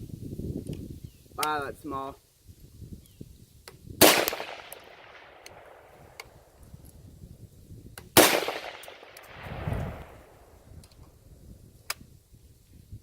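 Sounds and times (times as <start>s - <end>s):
rifle shots with echo: 4.0s - 6.4s, 8.2s - 10.4s.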